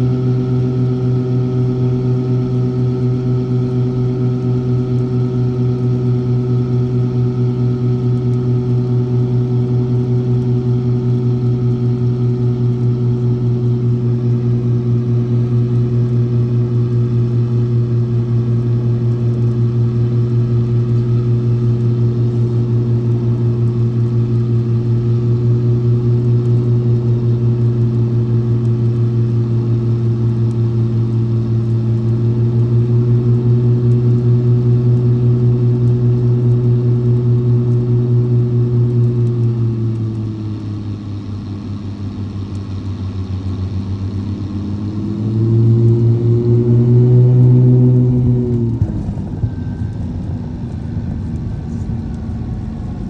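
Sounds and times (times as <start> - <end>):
twin piston engines droning: 43.5 - 53.0.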